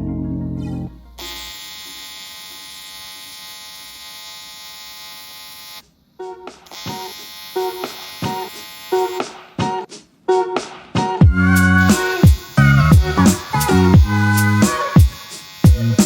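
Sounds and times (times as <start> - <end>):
electric welding arc buzzing: 1.2 - 5.8, 6.6 - 9.6, 11.6 - 16.0
short welding arc buzzes: 1.2 - 5.8, 6.7 - 9.4, 11.8 - 16.0.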